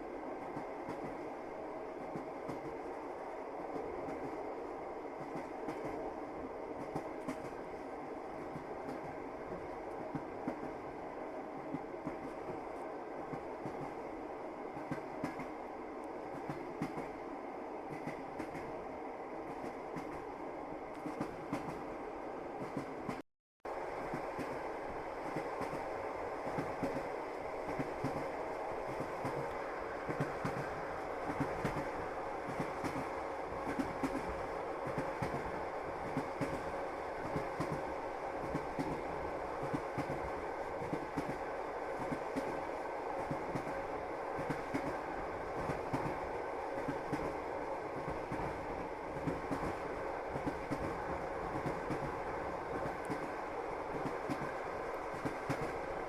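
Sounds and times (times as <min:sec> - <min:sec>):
train wheels clacking on rails: 0:00.0 - 0:01.3, 0:02.0 - 0:02.9, 0:05.2 - 0:06.0, 0:06.8 - 0:07.7, 0:08.3 - 0:10.8, 0:11.6 - 0:14.0, 0:14.8 - 0:15.6, 0:16.3 - 0:17.2, 0:17.9 - 0:18.8, 0:20.9 - 0:21.9, 0:24.0 - 0:56.0
train rumble: 0:00.0 - 0:56.0.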